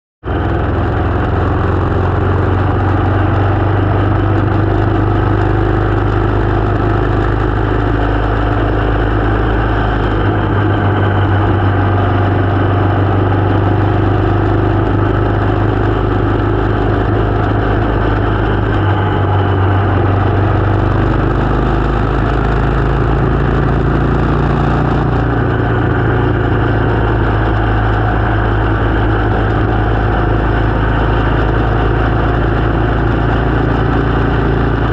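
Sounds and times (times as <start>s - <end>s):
motorcycle engine running: 0.2s - 34.9s.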